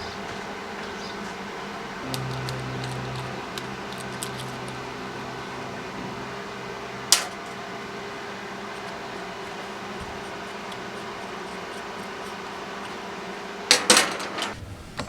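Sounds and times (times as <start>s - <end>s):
electrical machine hum: 0.0s - 15.0s
deeper hum: 1.7s - 12.0s.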